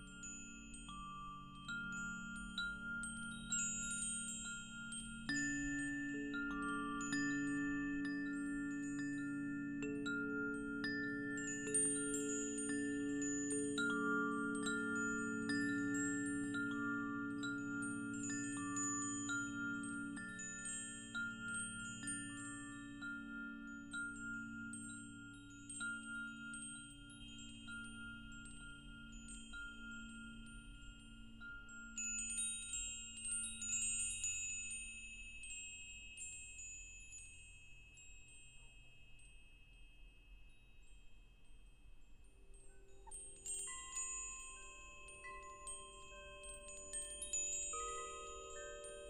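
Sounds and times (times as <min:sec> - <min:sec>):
wind chimes tinkling: 0:00.0 - 0:49.0.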